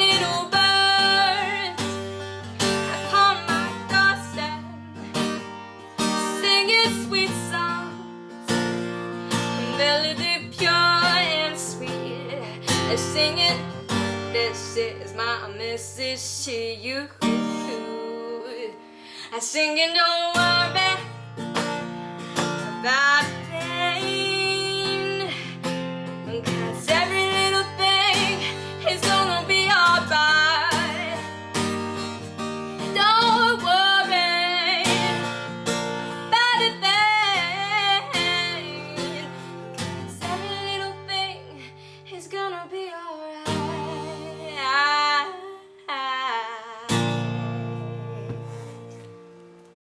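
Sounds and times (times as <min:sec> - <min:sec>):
girl singing: 0:00.0 - 0:05.0, 0:06.0 - 0:08.8, 0:09.4 - 0:21.8, 0:22.4 - 0:32.0, 0:32.8 - 0:48.3
strummed acoustic guitar: 0:00.0 - 0:49.7.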